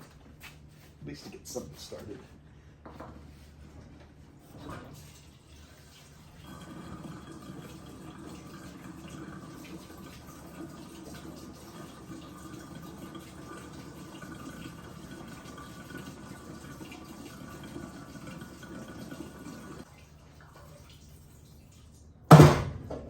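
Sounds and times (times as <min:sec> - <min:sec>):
fuel gurgling into tank: 0:05.6 - 0:19.9
loud clunk: 0:22.3 - 0:23.0.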